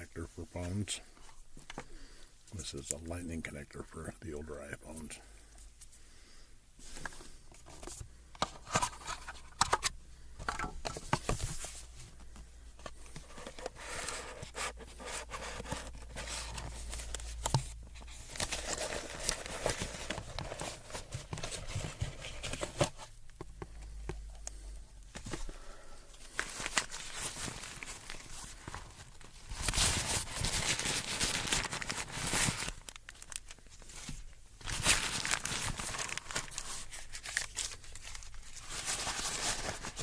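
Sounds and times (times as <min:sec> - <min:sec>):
packaging crinkling: 0:13.1 - 0:23.0, 0:26.2 - 0:34.0, 0:34.6 - 0:40.0.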